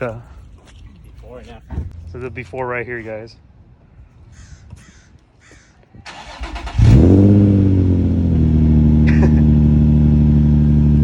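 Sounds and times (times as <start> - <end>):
car engine revving and idling: 6.4 - 11.0.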